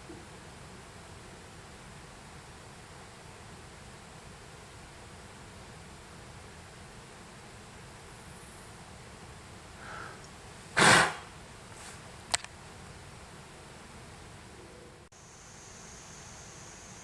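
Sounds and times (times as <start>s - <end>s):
deer alarm snort: 10.8s - 11.3s
sharp click: 12.3s - 12.5s.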